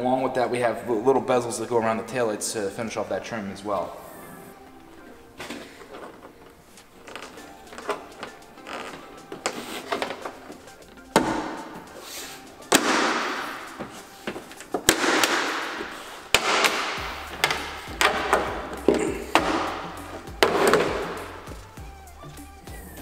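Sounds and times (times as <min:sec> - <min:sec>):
panel rattling and scraping: 0:04.9 - 0:12.0, 0:12.6 - 0:21.5
plastic clips snapping: 0:12.6 - 0:21.5.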